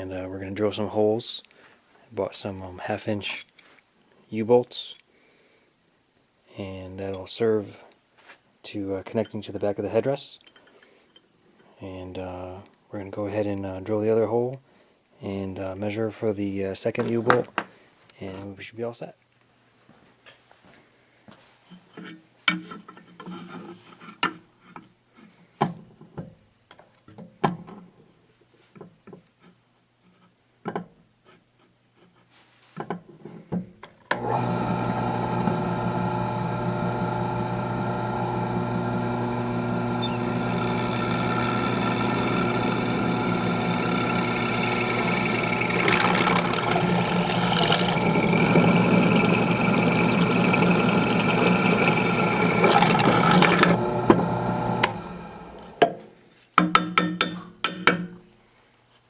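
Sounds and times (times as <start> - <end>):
drill press running: 34.1 - 55.8
drilling through metal tubing: 34.1 - 55.8.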